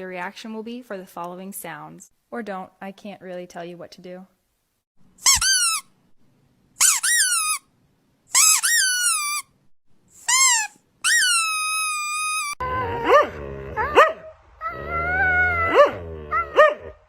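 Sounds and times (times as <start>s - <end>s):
high-pitched squeaks: 5.2s - 5.9s, 6.8s - 7.6s, 8.4s - 9.5s, 10.2s - 12.6s
dog whining and howling: 11.1s - 17.0s.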